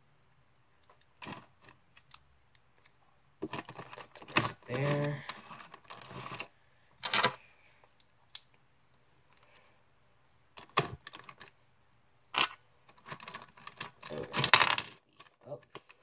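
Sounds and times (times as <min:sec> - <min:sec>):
plastic puzzle pieces clicking: 0:00.8 - 0:07.4, 0:10.6 - 0:11.6, 0:12.3 - 0:16.0.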